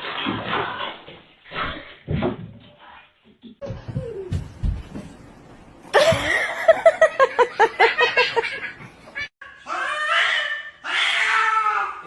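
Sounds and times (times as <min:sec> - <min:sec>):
soft low thumps: 0:03.6 - 0:06.4
person laughing rhythmically: 0:06.0 - 0:08.8.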